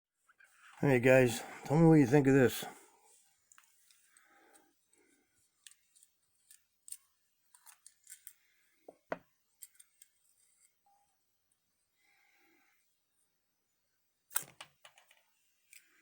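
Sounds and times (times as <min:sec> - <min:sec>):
small objects clicking and tapping: 0:05.6 - 0:10.8, 0:14.3 - 0:16.0.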